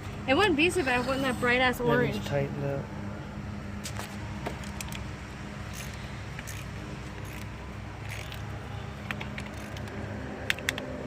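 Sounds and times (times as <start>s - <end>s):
wrench clinking on battery terminal: 5.7s - 8.4s.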